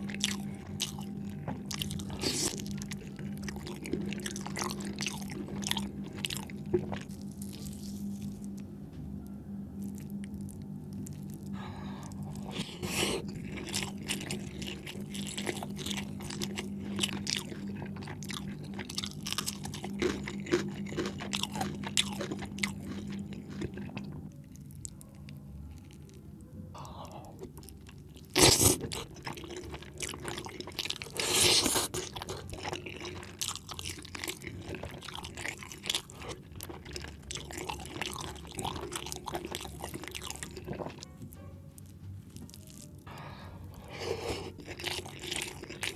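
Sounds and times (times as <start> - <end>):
chewing with wet smacks: 0.0 - 8.6, 9.9 - 26.2, 27.3 - 41.1, 44.2 - 45.9
low hum: 0.0 - 28.3.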